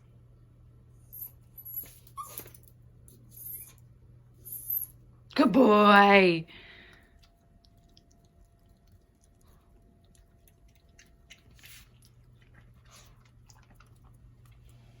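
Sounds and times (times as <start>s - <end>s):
puppy chewing wet clicks: 6.7s - 15.0s.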